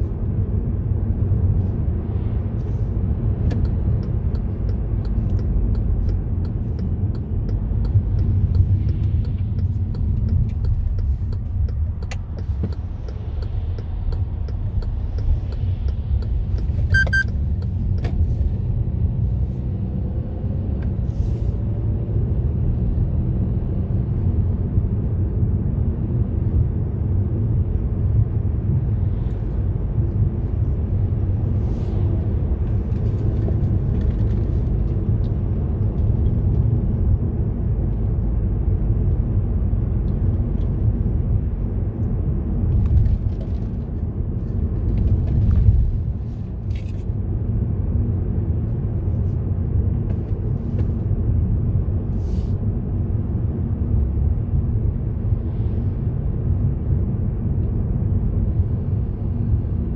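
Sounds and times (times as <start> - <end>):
car driving rumble from inside: 0.0 - 59.9
short high beep: 16.9 - 17.3.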